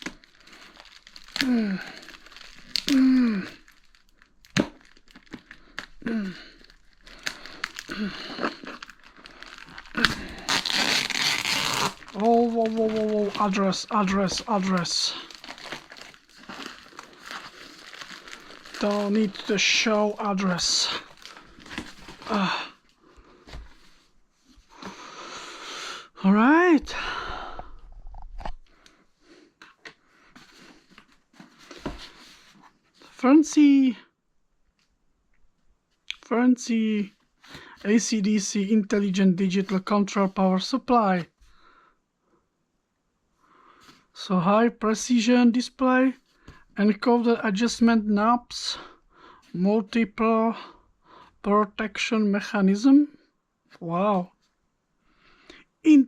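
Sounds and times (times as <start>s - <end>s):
sharp crackle: 0.0s - 13.6s
packaging crinkling and tearing: 0.0s - 22.6s.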